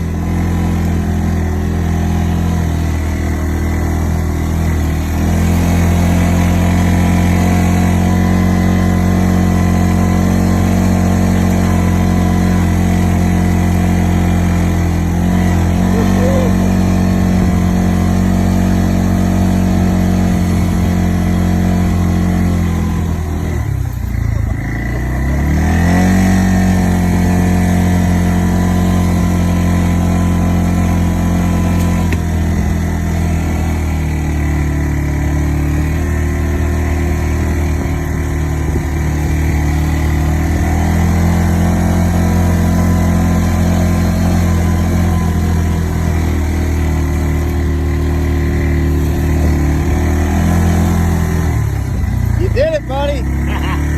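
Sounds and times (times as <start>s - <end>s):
atv engine running: 0.0s - 53.9s.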